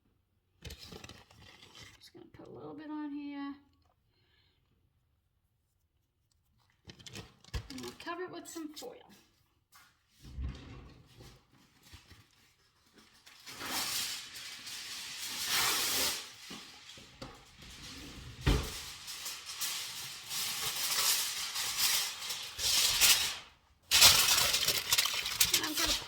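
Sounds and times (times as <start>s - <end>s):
aluminium foil crinkling: 11.6s - 26.0s.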